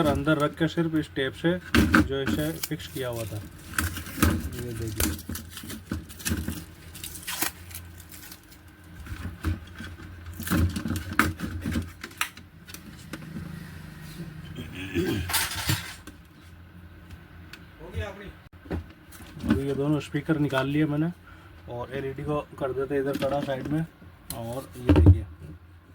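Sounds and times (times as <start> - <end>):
speakers being handled: 1.7 - 13.6.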